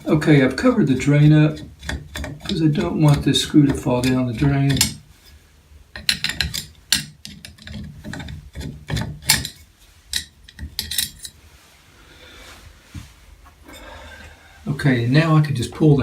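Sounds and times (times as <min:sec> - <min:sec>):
screwdriver scraping and clicking metal: 0:01.0 - 0:05.0, 0:06.0 - 0:11.4.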